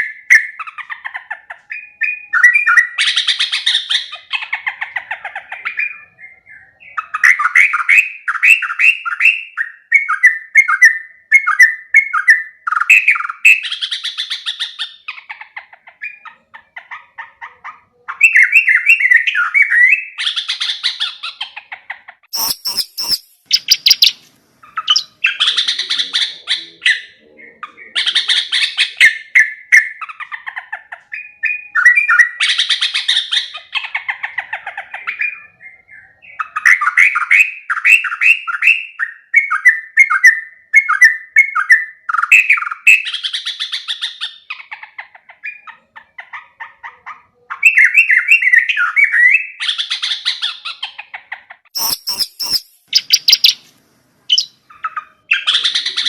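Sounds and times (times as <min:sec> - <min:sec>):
bulbul singing: 0:22.3 - 0:30.4, 0:51.7 - 0:56.0.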